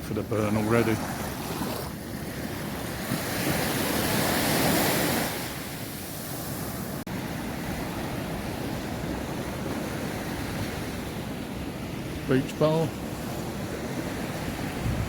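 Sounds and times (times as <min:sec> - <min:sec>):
small waves washing on sand: 0:00.0 - 0:15.0
wind on microphone: 0:13.0 - 0:15.0.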